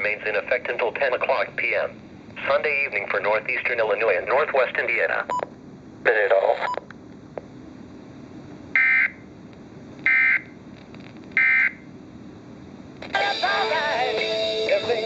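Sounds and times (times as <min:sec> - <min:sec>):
radio music and voices: 0:00.0 - 0:05.4, 0:06.0 - 0:06.8, 0:13.2 - 0:15.0.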